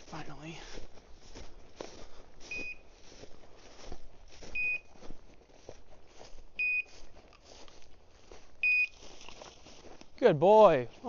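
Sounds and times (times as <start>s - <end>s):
short high beeps: 2.5s - 2.8s, 4.6s - 4.9s, 6.6s - 6.9s, 8.6s - 9.0s.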